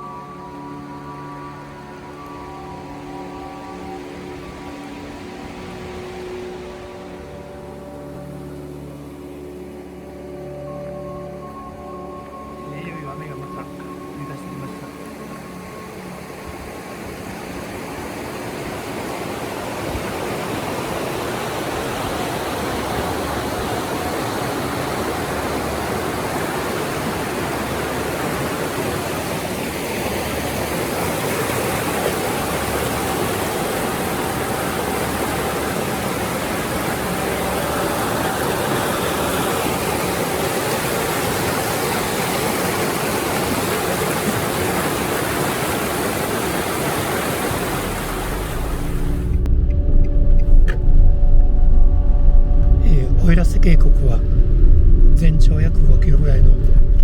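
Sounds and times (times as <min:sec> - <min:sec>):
stream rushing over rocks: 0:13.2 - 0:49.5.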